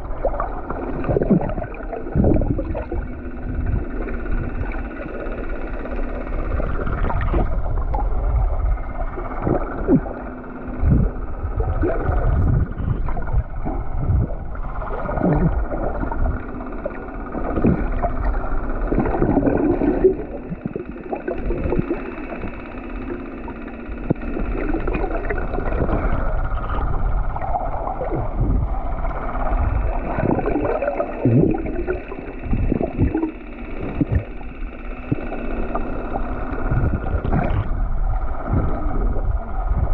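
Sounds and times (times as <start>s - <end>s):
wind on microphone: 0.0s - 4.8s, 6.4s - 10.1s, 10.8s - 16.4s, 24.0s - 34.4s, 36.5s - 39.9s
water sloshing around boat: 0.0s - 39.9s.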